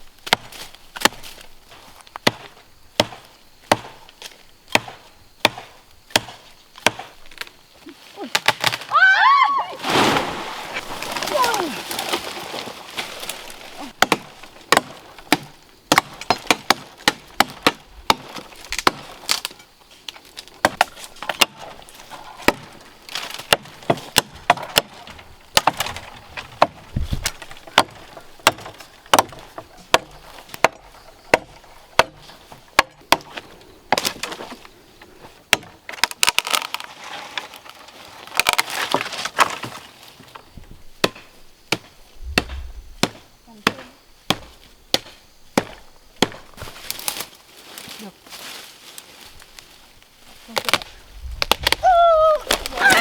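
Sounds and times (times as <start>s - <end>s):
hand tool chopping: 2.2s - 4.0s, 4.7s - 7.2s, 13.9s - 19.0s, 26.6s - 32.2s, 41.0s - 46.7s.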